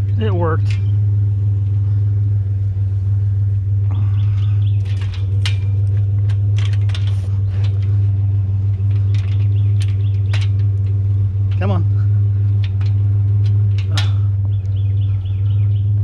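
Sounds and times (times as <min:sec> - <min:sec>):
metal rails clanking and rattling: 0:00.0 - 0:02.1, 0:03.8 - 0:15.9
truck engine idling: 0:00.0 - 0:16.0.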